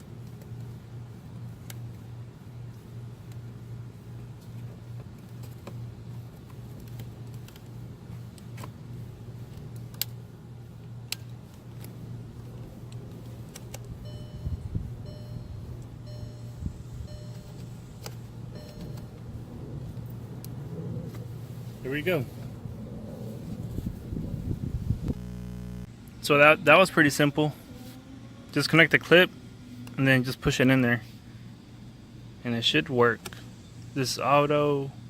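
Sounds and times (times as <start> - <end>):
steady low hum: 0.0 - 35.0
short electronic beep: 14.0 - 17.6, 18.6 - 19.0.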